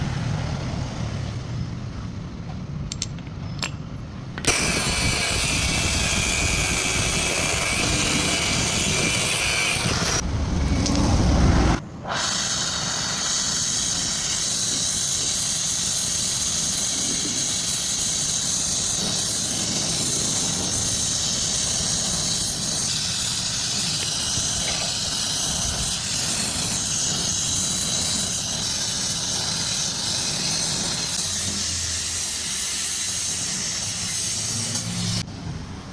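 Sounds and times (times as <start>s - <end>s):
welding hiss: 4.4s - 10.2s, 12.0s - 35.3s
low rumble: 10.0s - 12.0s.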